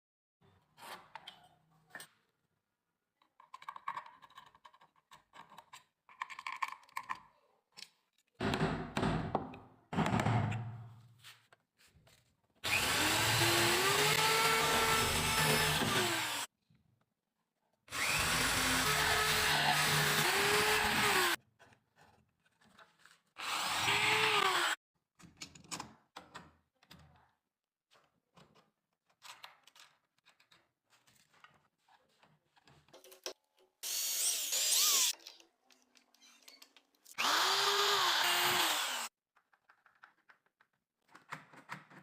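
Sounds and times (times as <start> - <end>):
power drill boring into wood: 12.6 - 16.5, 17.9 - 21.4, 23.4 - 24.8, 33.8 - 35.2, 37.2 - 39.1.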